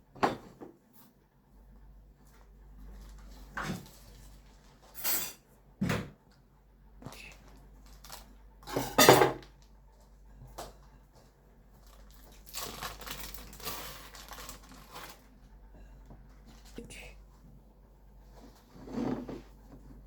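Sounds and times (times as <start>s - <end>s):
dishes knocking and clattering: 0.1s - 0.8s, 8.7s - 9.4s.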